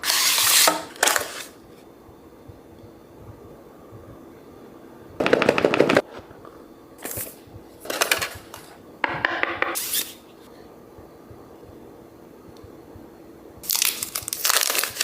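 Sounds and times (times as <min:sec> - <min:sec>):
packaging crackling and clicking: 0:13.6 - 0:15.0.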